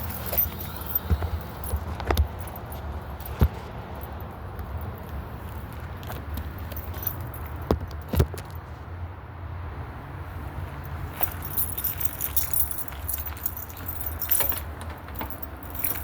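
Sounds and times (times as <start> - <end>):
metal objects jingling: 0.0 - 7.6, 11.2 - 16.0.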